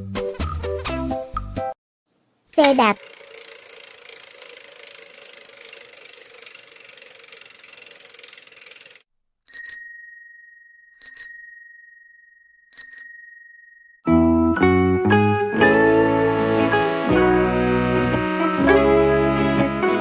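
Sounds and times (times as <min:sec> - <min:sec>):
bicycle bell ringing: 0:09.5 - 0:14.1
plucked guitar music: 0:14.1 - 0:20.0.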